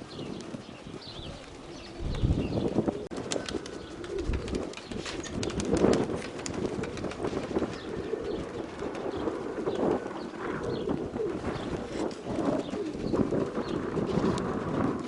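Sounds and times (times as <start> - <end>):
pigeons cooing: 0.0 - 15.0.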